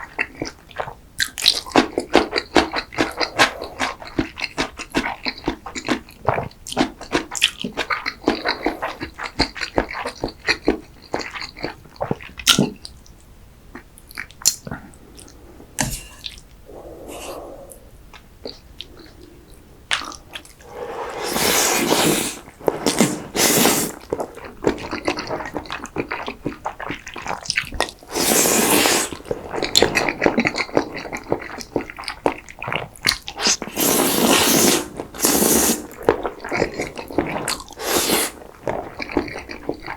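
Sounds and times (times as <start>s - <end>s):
wet chewing and mouth sounds: 0.1s - 12.9s, 16.2s - 39.9s
loud noisy eating sounds: 26.8s - 31.9s.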